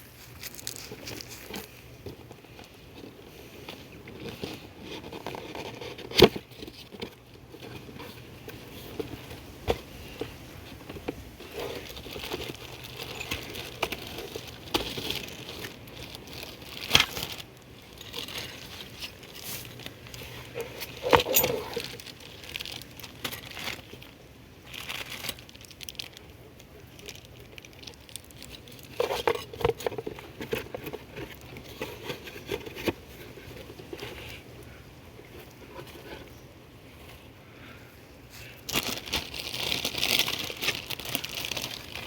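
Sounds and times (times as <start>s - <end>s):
packaging rustling and crinkling: 0.0s - 37.3s, 38.4s - 42.0s.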